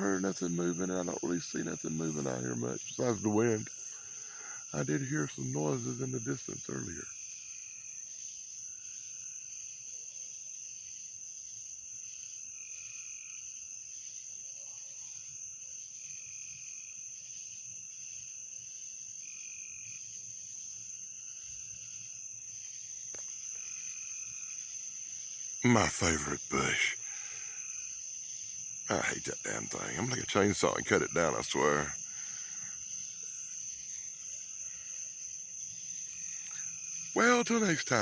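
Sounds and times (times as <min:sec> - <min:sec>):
high-pitched insect drone: 0:00.0 - 0:09.8, 0:10.4 - 0:38.0
short frog call: 0:25.6 - 0:27.9, 0:28.9 - 0:33.3, 0:36.2 - 0:38.0.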